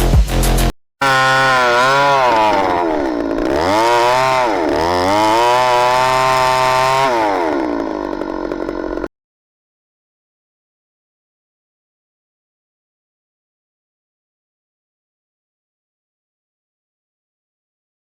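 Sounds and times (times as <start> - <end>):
chainsaw cutting log: 0.6 - 9.1.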